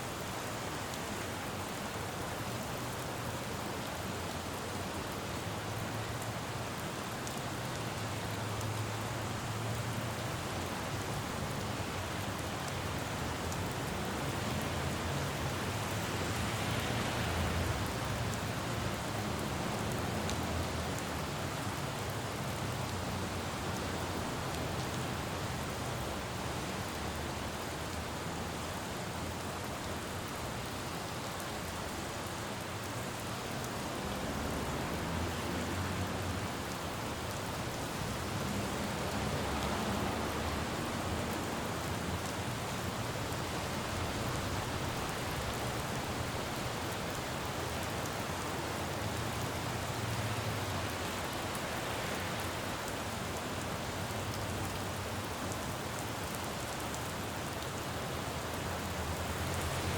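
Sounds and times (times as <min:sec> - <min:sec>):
rain falling on road: 0:00.0 - 0:59.9
passing traffic rumble: 0:33.7 - 0:48.0, 0:58.4 - 0:59.9.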